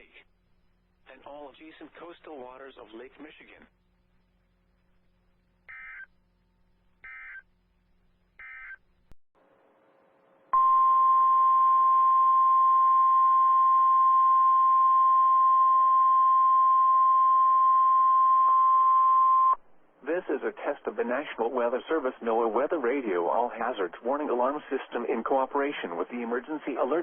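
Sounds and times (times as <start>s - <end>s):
weather radio alarm tone: 5.7s - 6.1s, 7.0s - 7.4s, 10.6s - 19.6s.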